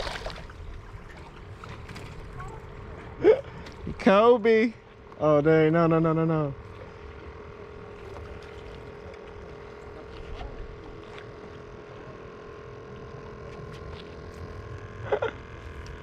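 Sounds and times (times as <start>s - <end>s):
boat motor humming: 0.0s - 16.0s.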